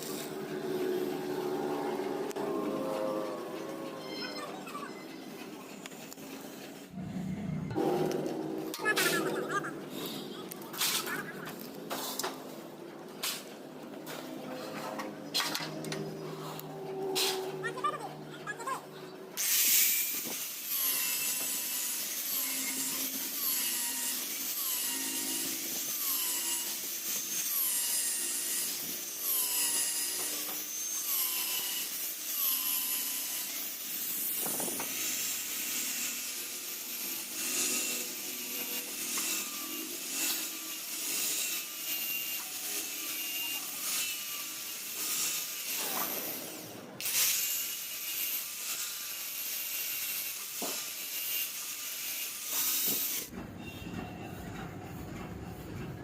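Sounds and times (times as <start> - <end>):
angle grinder cutting steel pipe: 19.4 - 53.3.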